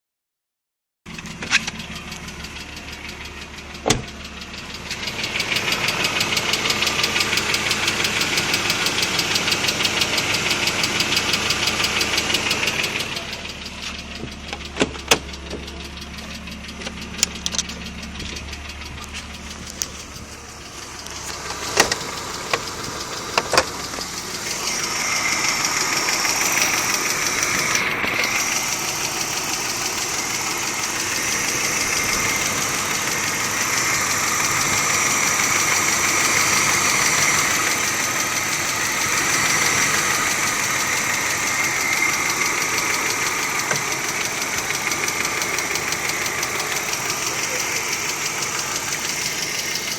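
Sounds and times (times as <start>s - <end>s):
car engine idling: 1.1s - 49.9s.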